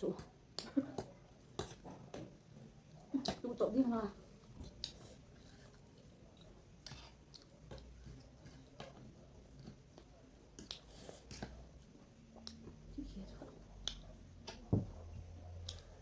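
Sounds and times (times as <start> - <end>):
person chewing food: 4.4 - 12.9, 13.7 - 16.0.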